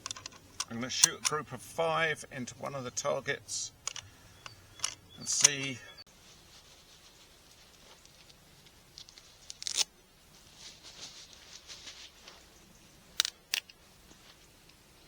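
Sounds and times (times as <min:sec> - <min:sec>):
sharp rifle clicks: 0:00.0 - 0:06.0
faint rustling: 0:10.3 - 0:12.6.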